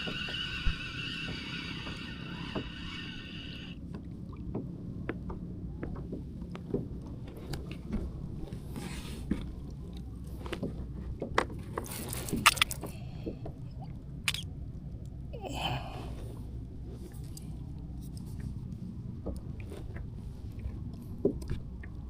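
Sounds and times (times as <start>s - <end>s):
steady low rumble: 12.8s - 22.0s.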